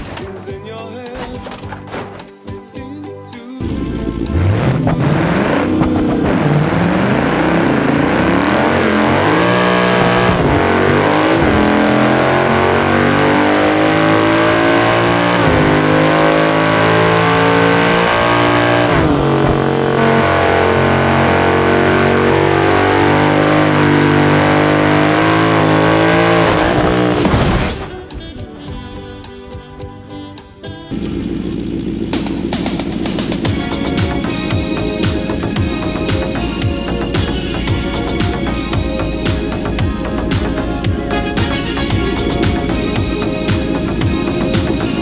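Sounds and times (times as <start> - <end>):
car engine accelerating: 3.6 - 28.4, 30.8 - 45.0.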